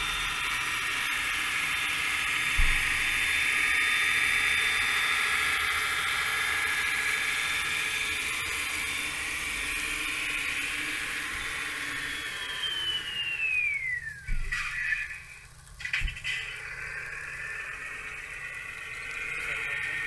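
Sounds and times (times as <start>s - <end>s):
small motor whining: 0.0s - 15.0s.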